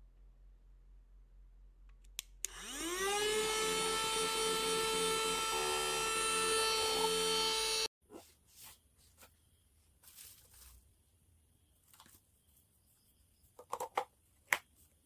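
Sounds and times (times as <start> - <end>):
vacuum cleaner motor whine: 2.5 - 7.9.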